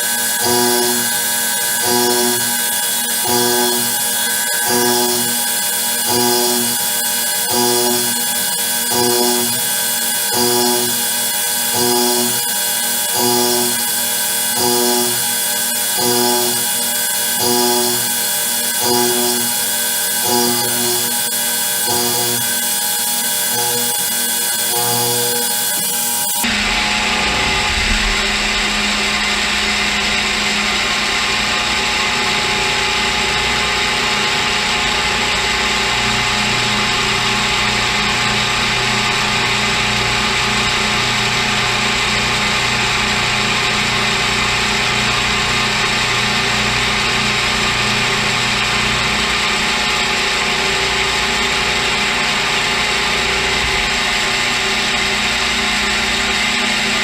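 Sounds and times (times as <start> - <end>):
milling machine cutting metal: 0.0 - 57.0.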